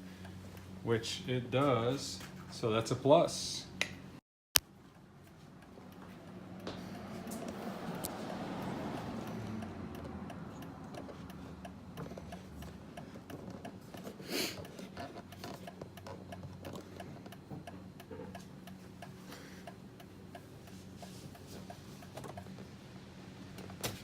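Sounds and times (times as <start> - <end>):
steady low hum: 0.0 - 24.0
turn signal ticking: 4.6 - 23.8.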